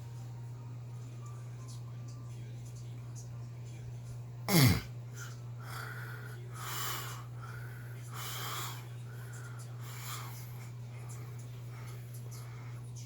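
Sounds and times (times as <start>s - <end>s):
man snoring: 4.5s - 4.9s.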